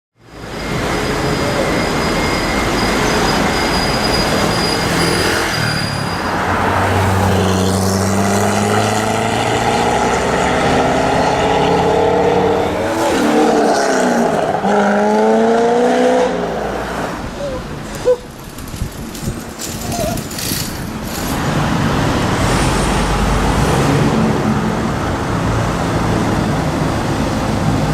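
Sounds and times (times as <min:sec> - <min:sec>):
loud car engine revving: 0:07.0 - 0:17.3.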